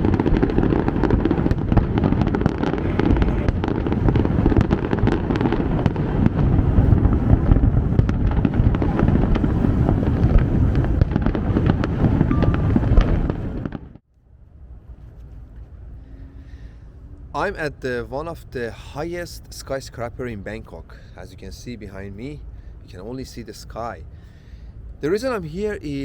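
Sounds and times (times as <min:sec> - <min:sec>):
fireworks cracks and pops: 0:00.0 - 0:14.0
low rumble: 0:00.0 - 0:17.6.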